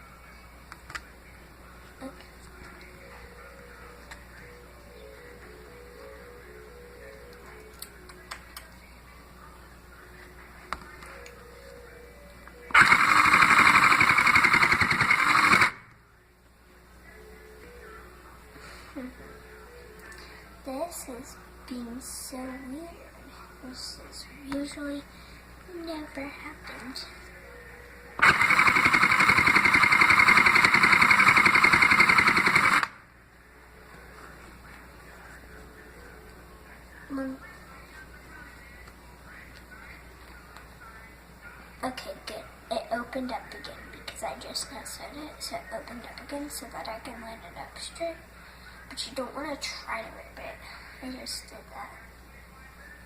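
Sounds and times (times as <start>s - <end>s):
toy sewing machine needle chattering: 12.7s - 15.8s, 28.2s - 32.9s.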